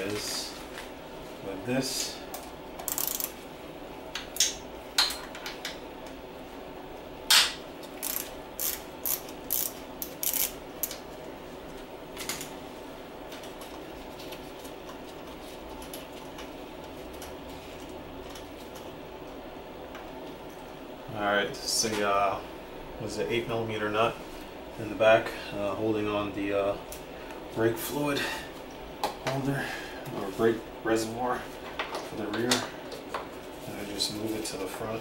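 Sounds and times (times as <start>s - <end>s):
steady low hum: 0.0s - 35.0s
hand ratchet clicking: 2.8s - 3.3s, 8.0s - 11.0s.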